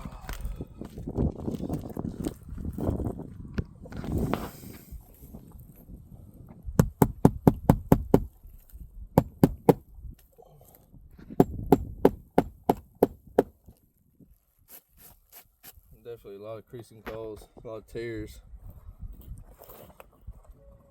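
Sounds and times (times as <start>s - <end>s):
hammer driving nails into shingles: 6.8s - 8.3s, 9.2s - 9.8s, 11.4s - 13.6s.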